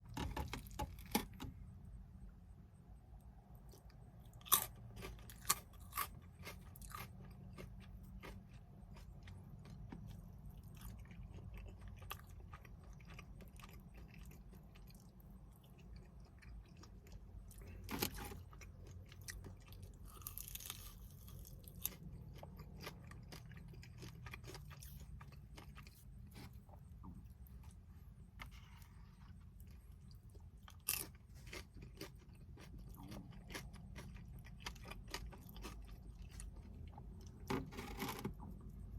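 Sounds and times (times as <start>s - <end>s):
faint low hum: 0.0s - 38.9s
person chewing crunchy food: 3.5s - 38.9s.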